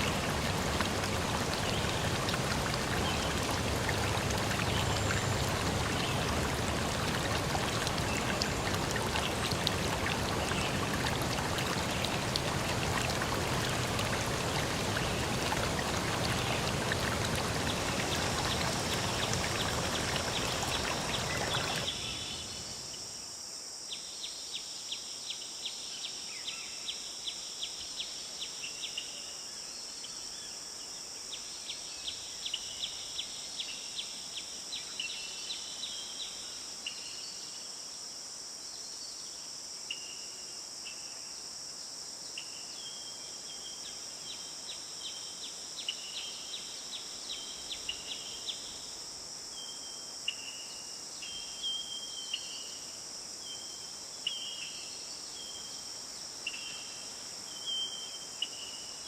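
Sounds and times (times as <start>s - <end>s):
insects droning: 0.0s - 24.4s.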